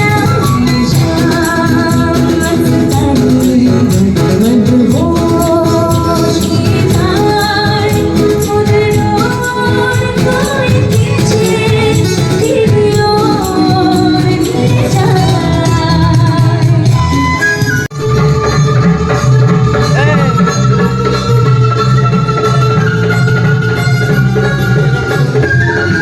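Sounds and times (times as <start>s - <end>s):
jingling tambourine percussion: 0.0s - 16.4s
person singing: 0.0s - 17.1s
dhol drumming: 0.0s - 26.0s.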